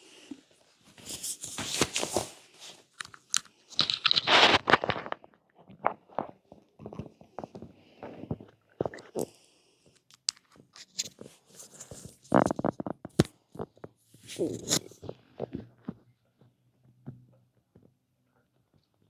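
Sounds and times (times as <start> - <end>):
stomach gurgling: 3.3 - 9.4, 12.1 - 16.1.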